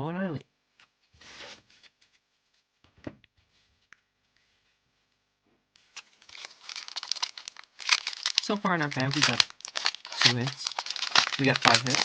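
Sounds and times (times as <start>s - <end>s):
foil wrapper crinkling: 5.9s - 12.0s
trading cards rustling and clicking: 5.9s - 12.0s.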